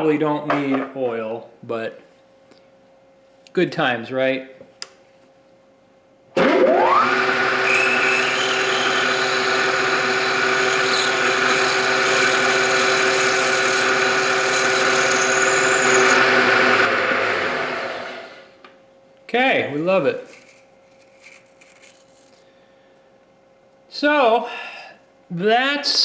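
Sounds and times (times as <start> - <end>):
milling machine spindle whine: 6.7 - 18.4.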